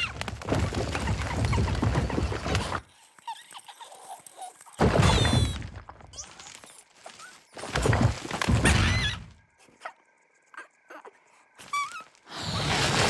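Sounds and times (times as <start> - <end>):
high squeaky chirps: 8.6 - 12.7.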